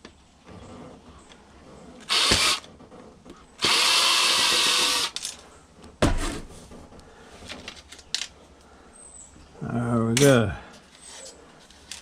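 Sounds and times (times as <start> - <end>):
power drill spinning: 2.0 - 2.7, 3.6 - 5.4.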